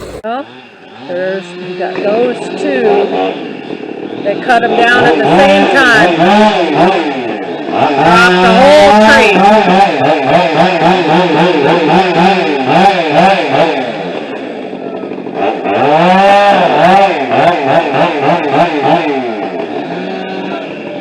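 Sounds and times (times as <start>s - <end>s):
chainsaws revving: 0.0s - 0.8s, 15.3s - 20.5s.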